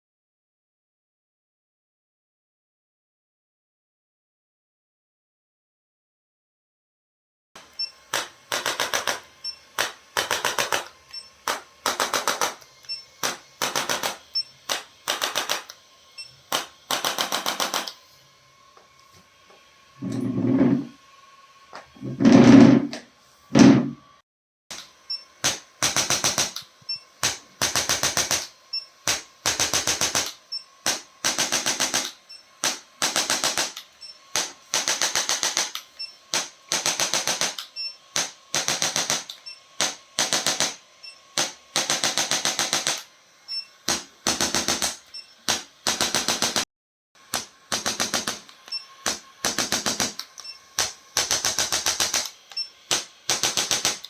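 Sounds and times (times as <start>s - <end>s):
rapid mechanical tapping: 8.1s - 15.8s, 16.5s - 18.0s, 25.4s - 37.6s, 47.3s - 54.0s.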